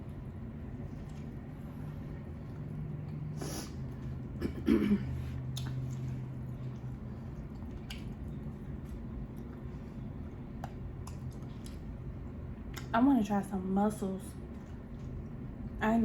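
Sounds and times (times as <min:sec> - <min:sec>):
wet mouth clicks and smacks: 0:05.5 - 0:08.4.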